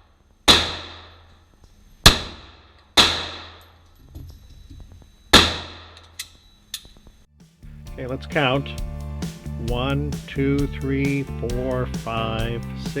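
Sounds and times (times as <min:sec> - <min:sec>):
pistol shots with echo: 0:02.1 - 0:03.6.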